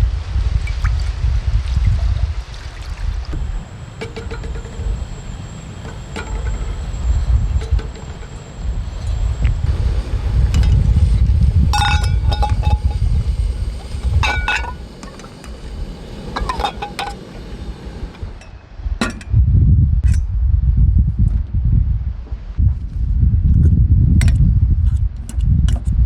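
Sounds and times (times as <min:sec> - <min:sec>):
wind buffeting microphone: 0:00.0 - 0:26.0
cooking utensils clinking: 0:13.7 - 0:18.5.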